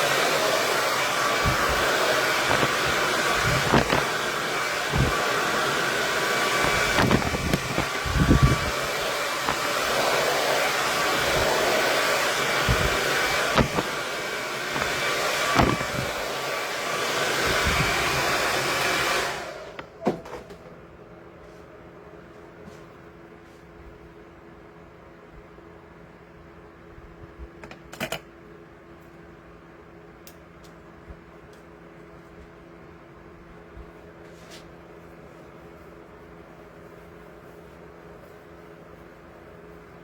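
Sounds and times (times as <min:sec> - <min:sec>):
hair dryer blowing: 0:00.0 - 0:19.9.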